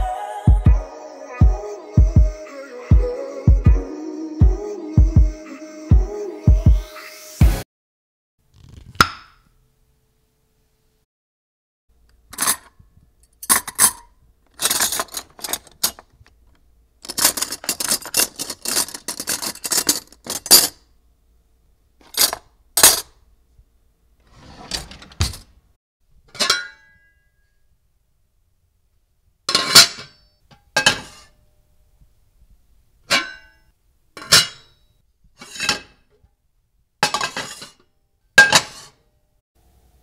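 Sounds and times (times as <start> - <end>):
kitchenware clinking and knocking: 12.3 - 16.1, 17.0 - 20.8, 22.0 - 23.2, 26.3 - 27.0, 29.5 - 30.2, 30.8 - 31.3, 34.2 - 34.8, 37.0 - 37.8, 38.4 - 39.0
kitchenware clattering and scraping: 12.3 - 16.2, 17.0 - 20.9, 22.0 - 23.2, 24.3 - 25.5, 26.3 - 27.0, 29.5 - 31.4, 33.1 - 33.6, 34.2 - 34.8, 35.4 - 36.2, 37.0 - 39.0.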